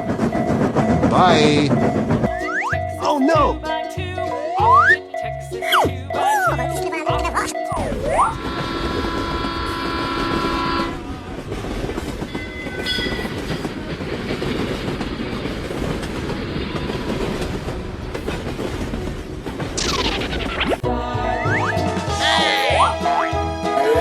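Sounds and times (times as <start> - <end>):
train rumble and rail clatter: 0.0 - 4.5, 5.2 - 22.6
multi-tone train horn: 8.4 - 11.7.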